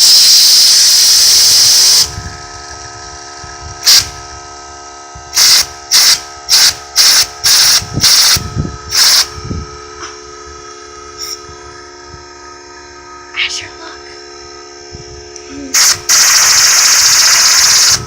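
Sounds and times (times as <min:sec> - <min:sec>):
compressed air blasts hissing: 0:00.0 - 0:02.2, 0:03.8 - 0:04.2, 0:05.3 - 0:09.4, 0:15.7 - 0:18.0.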